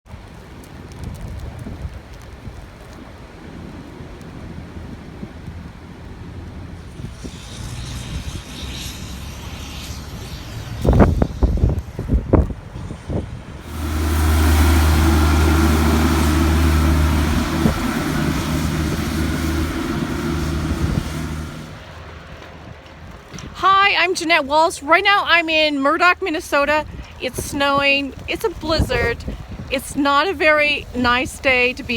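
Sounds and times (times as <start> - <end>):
loud rush of wind: 13.6 - 21.8
low rumble: 13.6 - 22.0
vehicle engine running: 13.6 - 22.1.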